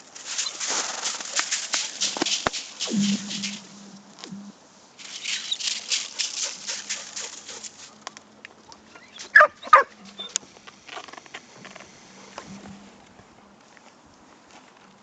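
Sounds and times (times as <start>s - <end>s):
ice cracking sharply: 0.0s - 4.1s, 5.0s - 7.9s
lake ice crackling: 0.0s - 4.1s, 4.9s - 8.0s.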